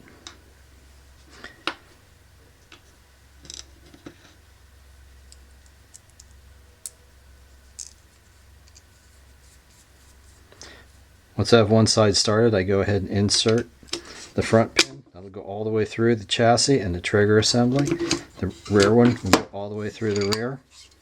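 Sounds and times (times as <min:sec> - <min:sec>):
faint low hum: 0:00.0 - 0:21.0
small metal parts clicking: 0:05.3 - 0:07.0, 0:07.7 - 0:08.9.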